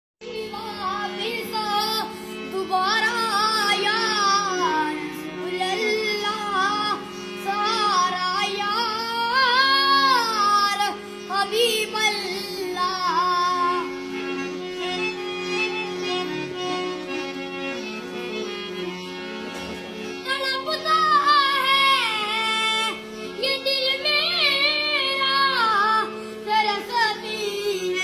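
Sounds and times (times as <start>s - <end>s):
high voice singing with vibrato: 0.2s - 14.2s, 20.2s - 28.0s
held accompaniment notes: 0.2s - 28.0s.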